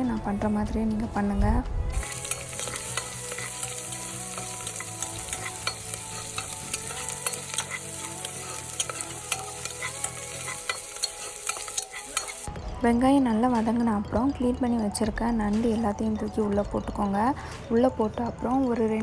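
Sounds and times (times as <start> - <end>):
onions sizzling in oil: 2.0 - 12.5
spatula scraping pan: 2.0 - 12.5.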